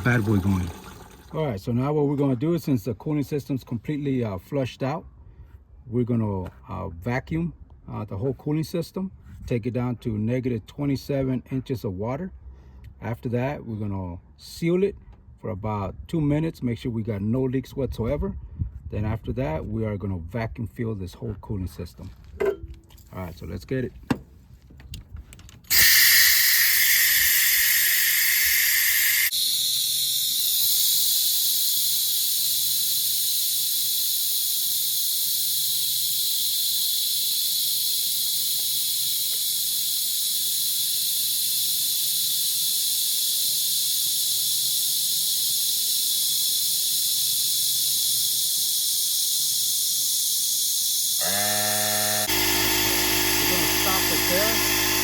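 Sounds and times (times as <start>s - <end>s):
vacuum tool hissing: 25.7s - 55.0s.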